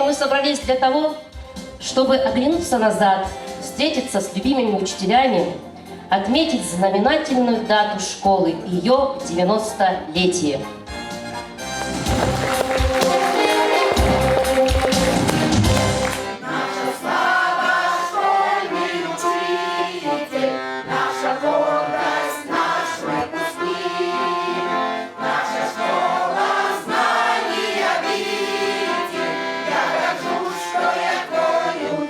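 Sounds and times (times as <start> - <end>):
accordion music: 11.1 - 32.0
group of voices singing: 11.8 - 32.0.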